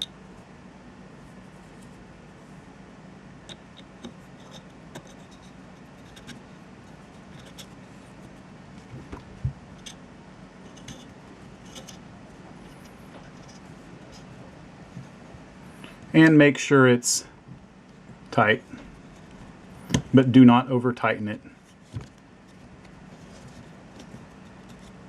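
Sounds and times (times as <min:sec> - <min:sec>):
steady low hum: 0:00.0 - 0:25.0
small metallic clicks and scrapes: 0:03.5 - 0:08.3, 0:10.6 - 0:12.0.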